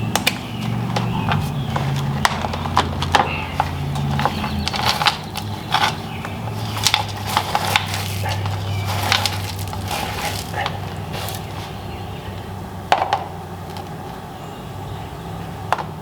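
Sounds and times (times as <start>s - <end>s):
pipe crunches and knocks: 0.1s - 11.9s.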